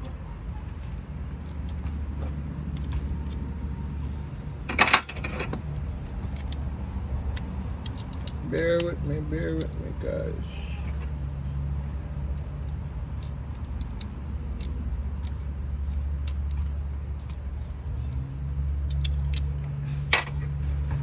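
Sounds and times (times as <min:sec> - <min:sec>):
hand tools clinking on metal: 0:04.7 - 0:06.7, 0:07.3 - 0:10.0.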